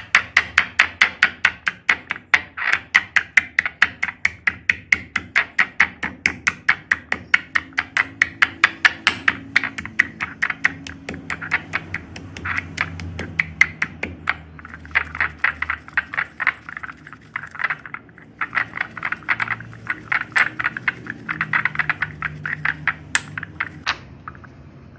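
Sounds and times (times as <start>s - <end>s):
chalk being crushed: 7.5s - 23.8s.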